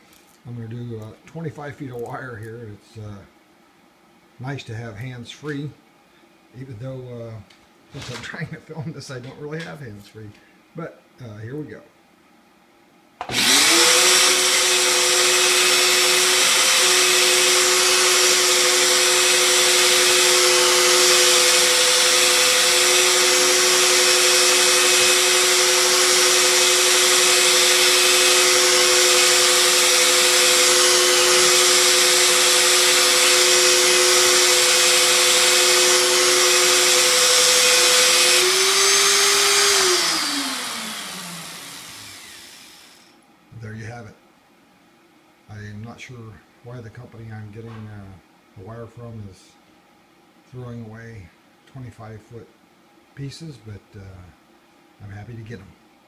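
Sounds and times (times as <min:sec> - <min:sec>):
electric drill motor whining: 0:13.2 - 0:43.1.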